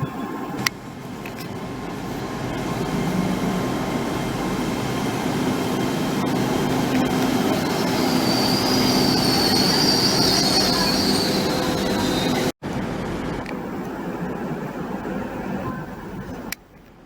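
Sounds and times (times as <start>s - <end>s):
train rumble: 0.0s - 17.0s
high-pitched wheel squeal: 6.3s - 12.5s.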